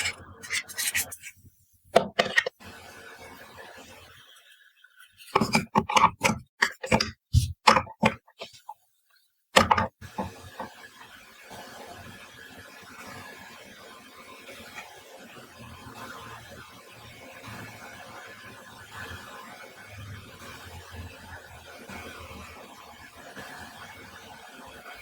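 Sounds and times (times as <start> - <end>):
soft handling sounds: 0.0 - 2.5, 5.0 - 8.8.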